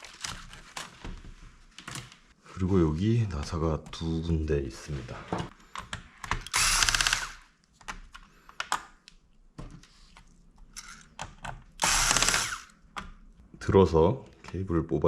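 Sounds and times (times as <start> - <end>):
electric screwdriver running: 6.4 - 7.4, 11.8 - 12.7.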